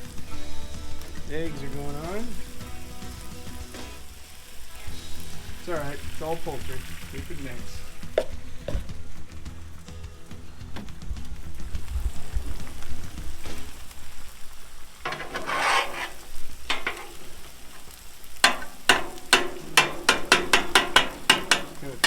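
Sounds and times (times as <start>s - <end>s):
food sizzling on griddle: 0.0s - 22.0s
metal spatulas scraping on griddle: 15.0s - 22.0s.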